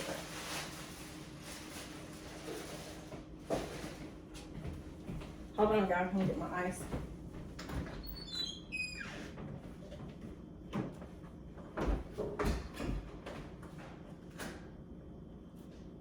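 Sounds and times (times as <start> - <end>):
kitchen knocks and clunks: 9.4 - 13.5.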